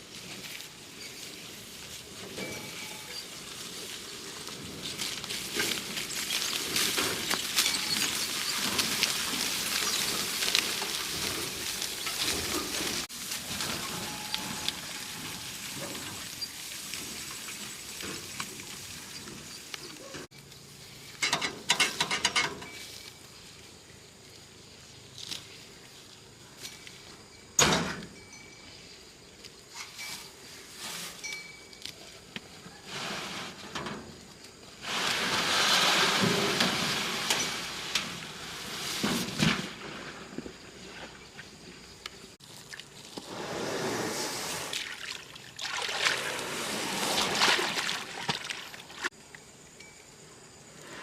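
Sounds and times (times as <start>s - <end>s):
water pouring and sloshing: 43.9s - 49.1s.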